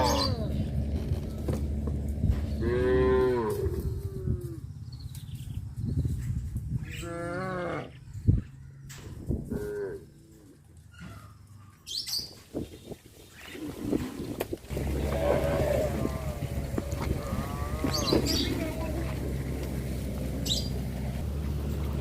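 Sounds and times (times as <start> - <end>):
cattle mooing: 2.6 - 4.5, 14.7 - 19.2.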